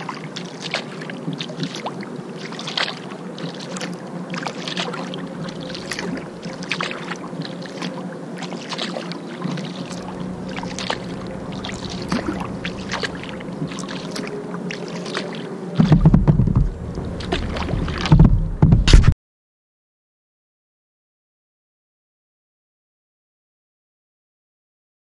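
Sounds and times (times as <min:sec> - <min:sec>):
paddle splashing in water: 0:00.0 - 0:19.2
steady low hum: 0:04.0 - 0:08.5, 0:09.2 - 0:19.2
loud low rumble: 0:10.0 - 0:14.4, 0:15.8 - 0:19.2.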